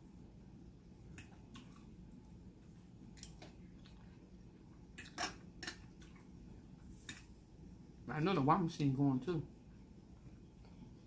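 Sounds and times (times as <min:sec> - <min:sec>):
person chewing food: 0:01.0 - 0:07.4.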